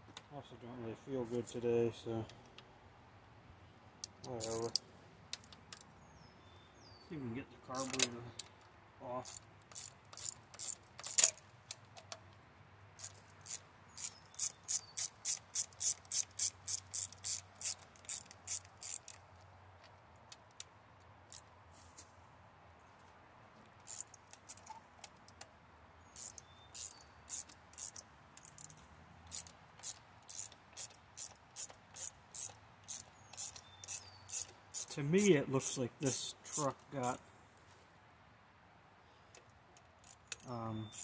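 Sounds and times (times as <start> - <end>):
hand ratchet clicking: 4.0 - 4.8, 9.2 - 12.2, 13.0 - 19.2, 23.8 - 25.5, 26.2 - 37.2, 40.0 - 41.0.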